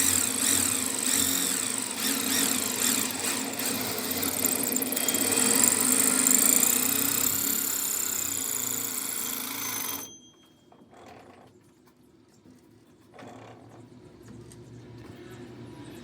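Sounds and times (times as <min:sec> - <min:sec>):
harsh power tool noise: 0:00.0 - 0:10.1.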